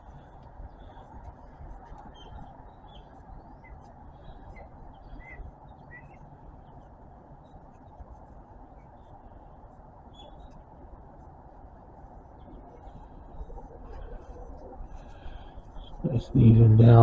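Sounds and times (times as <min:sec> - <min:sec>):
small birds chirping: 0:00.0 - 0:10.8
low background noise: 0:00.0 - 0:17.0.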